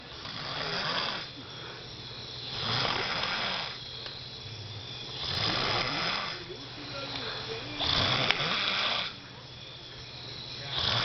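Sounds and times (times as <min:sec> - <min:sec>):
person snoring: 0:00.0 - 0:03.9, 0:05.2 - 0:06.5, 0:07.1 - 0:09.2, 0:10.6 - 0:11.0.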